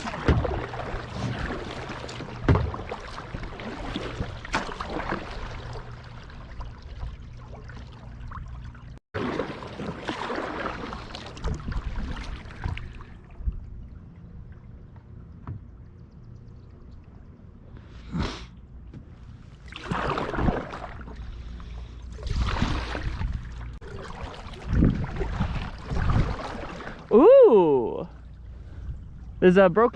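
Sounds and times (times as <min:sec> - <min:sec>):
sharp splash: 0:00.0 - 0:06.5, 0:09.2 - 0:13.0, 0:19.6 - 0:21.1, 0:22.2 - 0:27.2
kayak paddle splashing: 0:00.0 - 0:14.0, 0:19.3 - 0:27.7.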